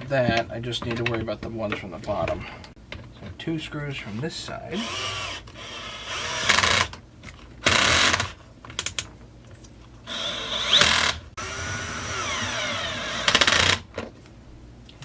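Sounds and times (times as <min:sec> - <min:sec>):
cordless drill whining: 0:04.8 - 0:06.9, 0:10.1 - 0:13.8.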